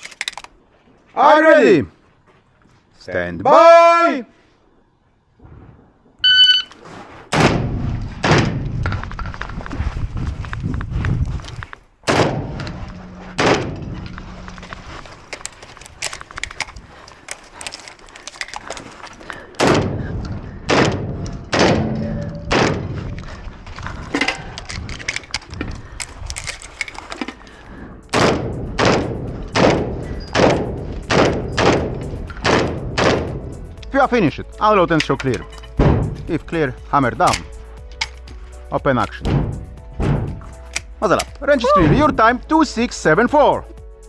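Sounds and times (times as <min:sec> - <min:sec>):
shotgun shots: 0:07.3 - 0:08.6, 0:12.1 - 0:13.9, 0:19.6 - 0:20.1, 0:20.7 - 0:23.0, 0:28.1 - 0:33.4.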